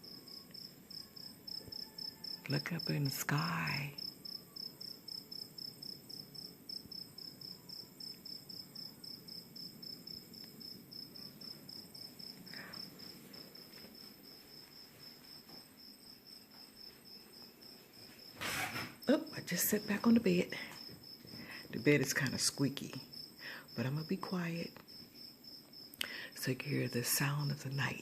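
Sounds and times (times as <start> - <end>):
cricket chirping: 0.0 - 28.0.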